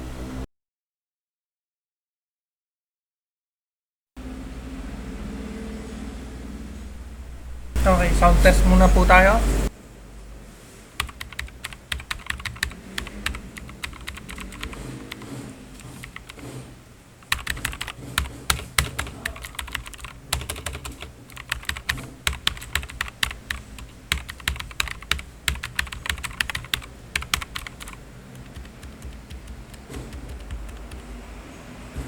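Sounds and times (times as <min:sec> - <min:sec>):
clicky keyboard typing: 0:11.0 - 0:16.6, 0:17.2 - 0:31.2.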